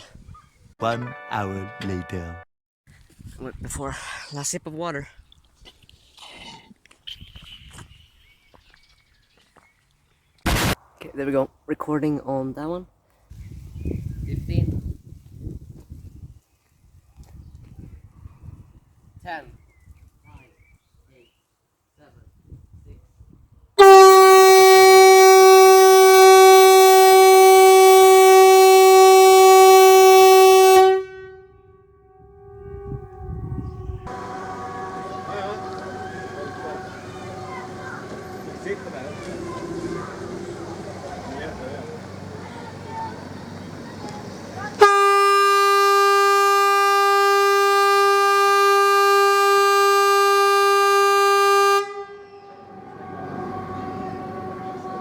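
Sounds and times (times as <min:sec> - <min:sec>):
warning horn blast: 0:23.8 - 0:44.0, 0:44.7 - 0:55.0
distant horns tone: 0:23.8 - 0:55.0.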